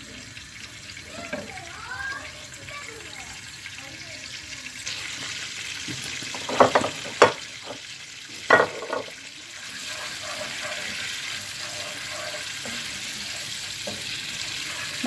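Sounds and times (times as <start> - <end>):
dishes and utensils clattering: 5.9 - 7.8, 8.4 - 9.2.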